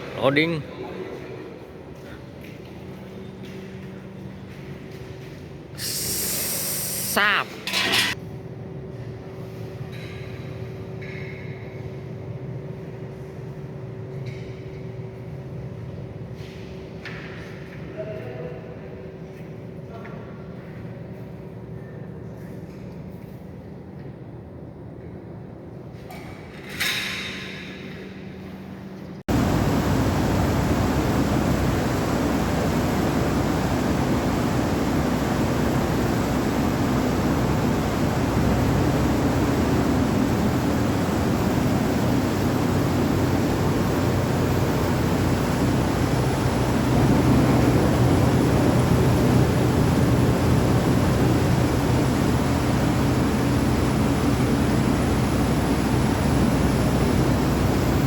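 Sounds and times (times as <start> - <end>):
grain dryer blower rushing: 29.3 - 58.0.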